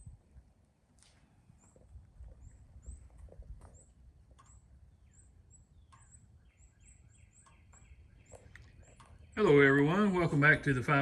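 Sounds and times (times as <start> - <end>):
lower bird calls: 1.5 - 10.2
high bird chirps: 1.6 - 10.2.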